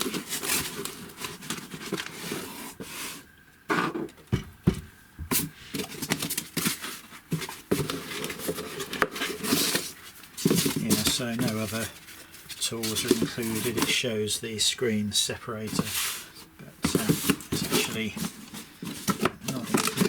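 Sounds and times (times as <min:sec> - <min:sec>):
packaging rustling and clicks: 0:05.4 - 0:14.0, 0:16.8 - 0:20.0.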